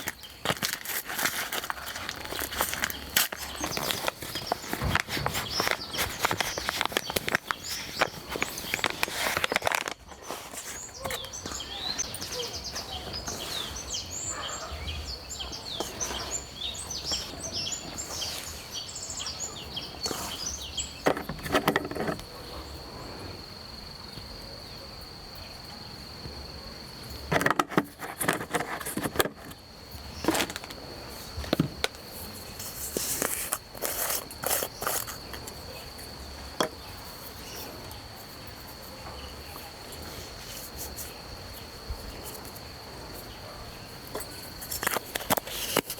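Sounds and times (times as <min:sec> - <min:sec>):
bird chirps: 0:10.6 - 0:21.1.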